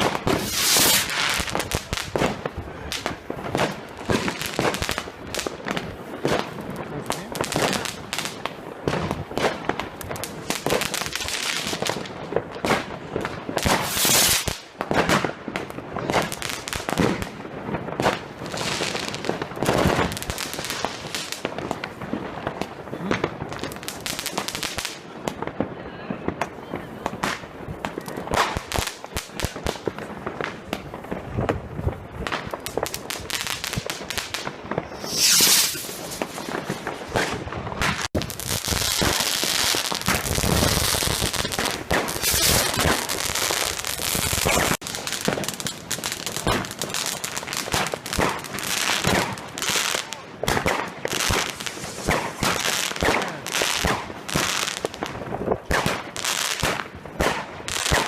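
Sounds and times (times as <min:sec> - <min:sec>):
fireworks hissing: 0:00.0 - 0:03.2, 0:13.6 - 0:14.6, 0:33.2 - 0:54.8
fireworks and firecrackers banging: 0:00.0 - 0:58.0.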